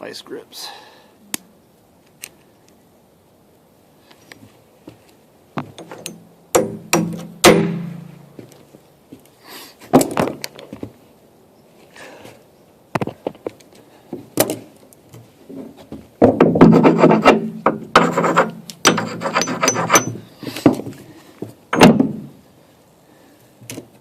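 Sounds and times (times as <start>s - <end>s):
harsh metal scraping: 16.6s - 20.3s
metal knocks and clinks: 18.8s - 20.3s.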